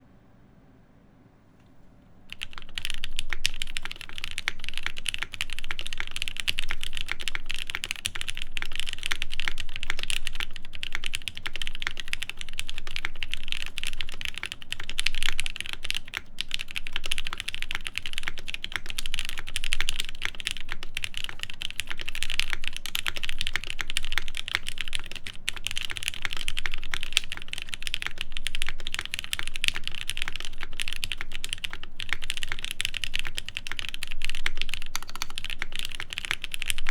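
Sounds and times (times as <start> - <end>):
fast typing on mechanical keyboard: 2.3 - 36.9.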